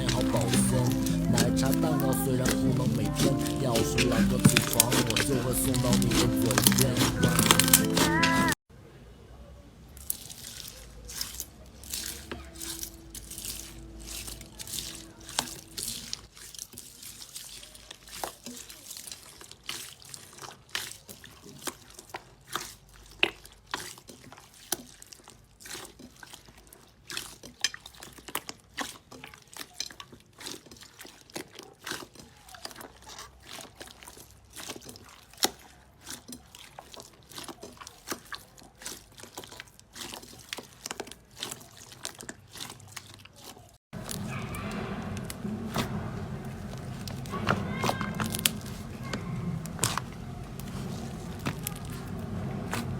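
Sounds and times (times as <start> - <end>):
slime squeezed by hand: 0.0 - 8.6.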